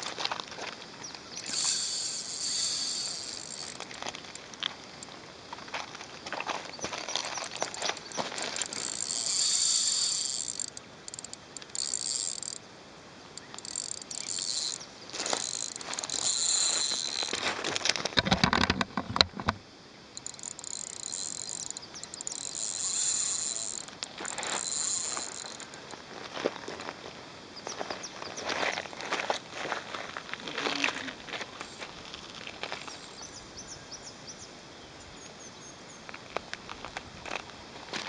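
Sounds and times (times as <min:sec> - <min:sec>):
insects shrilling: 0:01.2 - 0:18.3, 0:20.1 - 0:26.1, 0:31.6 - 0:33.5.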